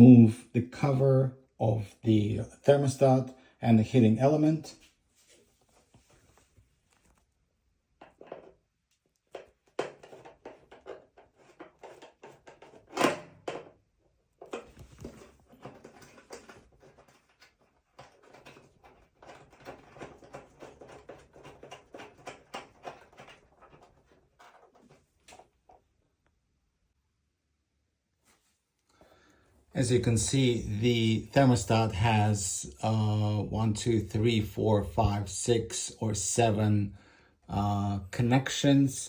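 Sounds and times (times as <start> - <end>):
metal cover clicking and rattling: 8.0 - 8.5, 9.3 - 13.8, 14.4 - 25.4.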